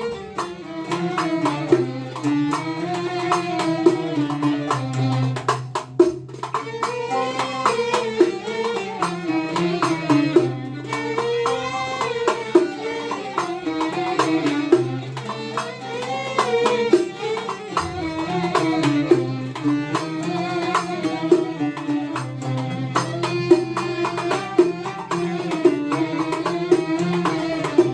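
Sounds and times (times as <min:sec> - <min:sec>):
wavering folk melody: 0:00.0 - 0:05.6, 0:06.2 - 0:27.9
percussion hits: 0:00.0 - 0:27.9.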